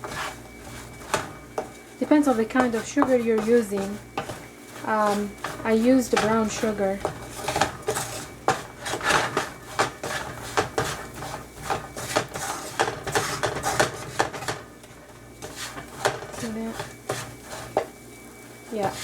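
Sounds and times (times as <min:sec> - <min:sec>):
spoon scraping a skillet: 0:00.0 - 0:19.0.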